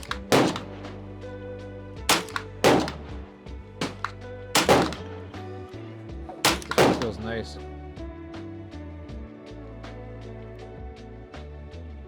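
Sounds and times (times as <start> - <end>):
gunshots: 0.0 - 1.0, 2.1 - 5.2, 6.4 - 7.3
background music: 0.0 - 12.0.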